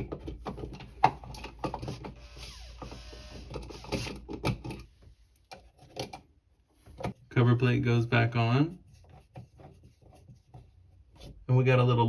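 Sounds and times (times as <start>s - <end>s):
plastic and metal clicks and knocks: 0.0s - 2.2s.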